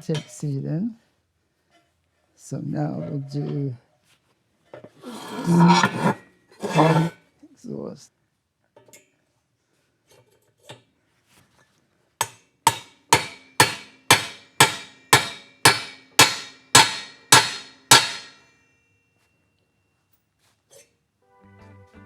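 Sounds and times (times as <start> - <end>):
hammer striking metal: 12.2 - 18.7.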